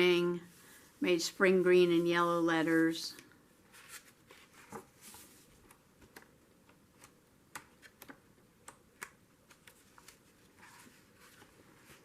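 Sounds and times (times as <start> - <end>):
paper pages rustling and turning: 3.6 - 6.3, 9.0 - 12.0.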